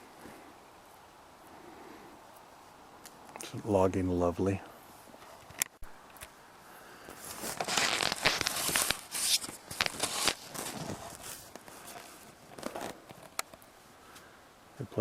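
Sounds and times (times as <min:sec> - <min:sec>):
footsteps crunching: 0:07.1 - 0:13.3.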